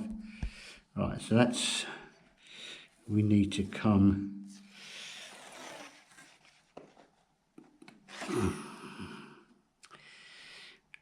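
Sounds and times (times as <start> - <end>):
person sighing: 8.1 - 9.6.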